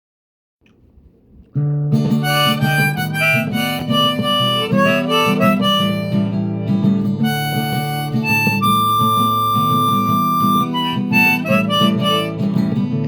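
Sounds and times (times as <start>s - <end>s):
bright instrumental melody: 2.2s - 6.4s, 7.2s - 12.5s.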